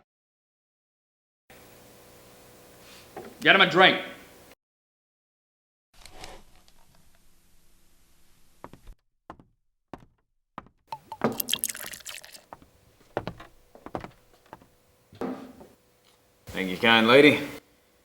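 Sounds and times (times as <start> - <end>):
drink poured into a glass: 11.0 - 12.6.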